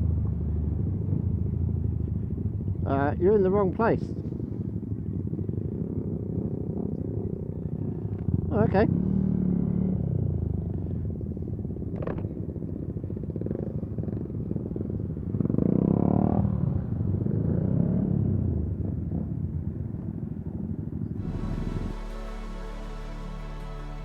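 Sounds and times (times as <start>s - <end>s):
motorcycle engine rumbling: 21.2s - 24.0s.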